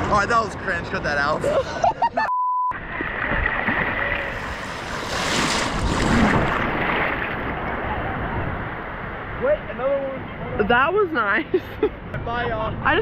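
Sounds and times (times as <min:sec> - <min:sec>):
ocean waves breaking: 0:02.8 - 0:09.5
wind rumble on microphone: 0:02.8 - 0:09.6.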